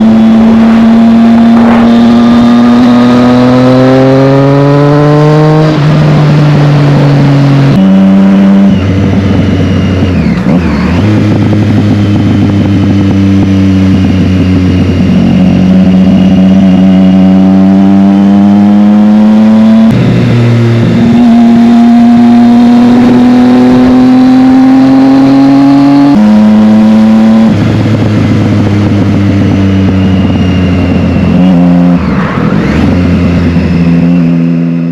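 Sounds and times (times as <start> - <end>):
motorcycle engine accelerating: 0.0 - 34.9.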